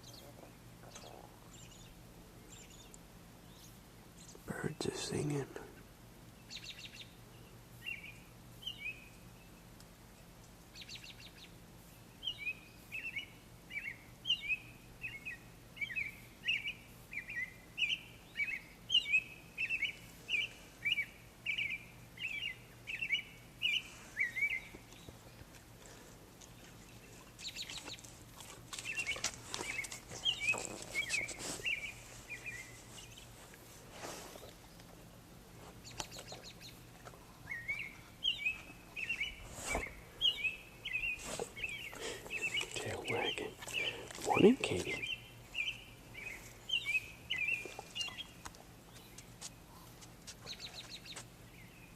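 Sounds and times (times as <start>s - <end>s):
songbirds singing: 0.0s - 51.9s
brief crackling noises: 39.4s - 40.0s.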